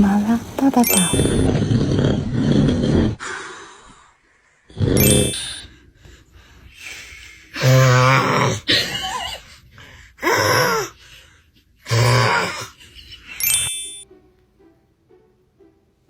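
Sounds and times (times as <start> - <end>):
man snoring: 1.4 - 3.5, 4.7 - 5.7, 7.5 - 8.7, 11.9 - 12.7.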